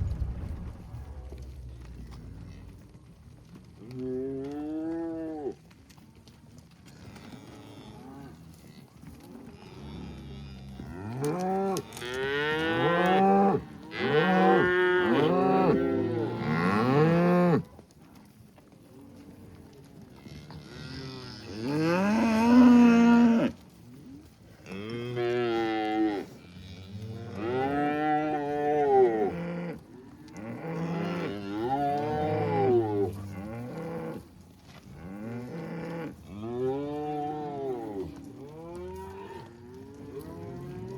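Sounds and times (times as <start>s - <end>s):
cows mooing and bawling: 9.4s - 17.7s, 20.4s - 23.6s, 24.6s - 34.3s, 34.9s - 40.9s.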